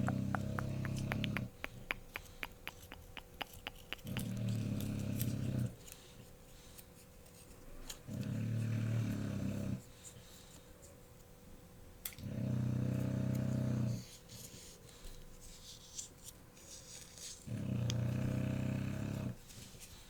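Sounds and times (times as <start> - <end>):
puppy snoring: 0.0 - 5.8, 8.1 - 9.8, 12.2 - 14.1, 17.4 - 19.4.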